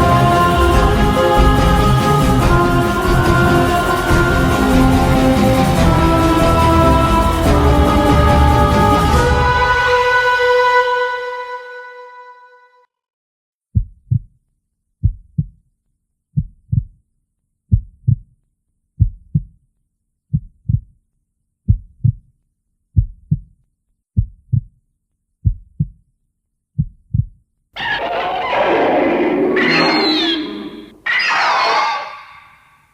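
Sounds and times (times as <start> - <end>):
loud harsh noise: 0.0 - 10.4, 27.8 - 32.6
heartbeat thumps: 24.2 - 24.7.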